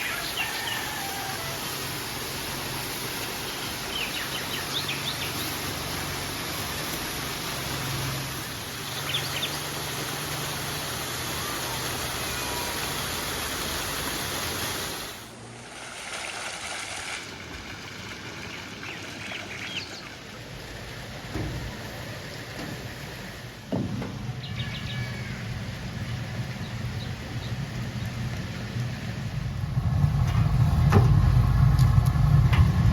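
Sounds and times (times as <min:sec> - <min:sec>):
river water running: 0:00.0 - 0:32.9
small birds chirping: 0:03.4 - 0:05.7, 0:08.7 - 0:10.0, 0:18.8 - 0:20.2, 0:24.4 - 0:28.7.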